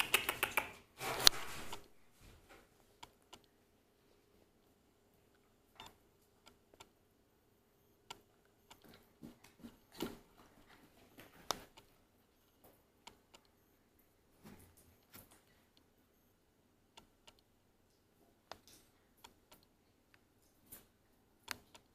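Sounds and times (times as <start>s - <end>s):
puppies clicking and tapping: 0.0s - 1.8s
faint steady hum: 0.0s - 21.9s.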